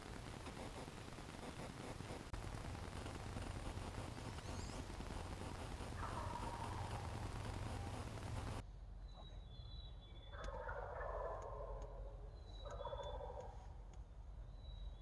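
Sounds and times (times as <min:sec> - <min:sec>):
steady hiss: 0:00.0 - 0:08.6
faint songbird chirps: 0:04.2 - 0:05.0, 0:06.1 - 0:10.9, 0:11.7 - 0:15.0
turkey gobbling: 0:06.0 - 0:08.1, 0:10.3 - 0:13.6.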